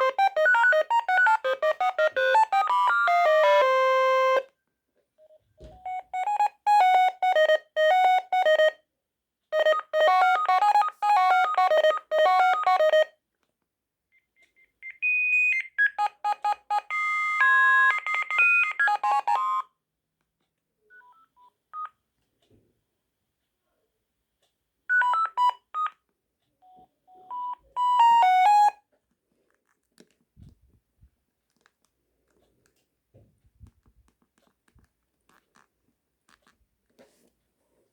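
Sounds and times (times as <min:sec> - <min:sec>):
phone beeps: 0:00.0 - 0:04.4, 0:05.2 - 0:08.8, 0:09.6 - 0:13.1, 0:14.2 - 0:19.7, 0:24.9 - 0:26.0, 0:26.6 - 0:28.8
electronic ringtone melodies: 0:00.0 - 0:04.5, 0:05.8 - 0:08.8, 0:09.6 - 0:13.1, 0:15.5 - 0:19.7, 0:27.4 - 0:28.8.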